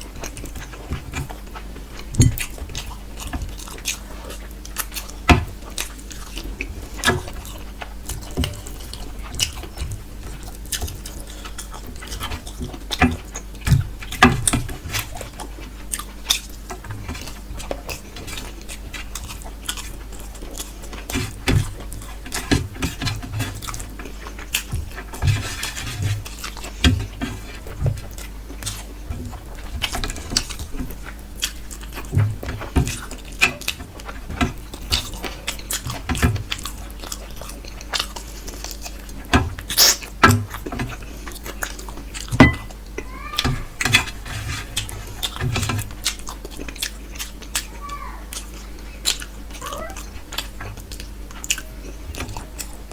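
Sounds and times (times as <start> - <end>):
wet chewing and biting: 0.2 - 14.2, 15.0 - 43.0, 44.7 - 52.9
mouth clicks and smacks: 39.7 - 40.1.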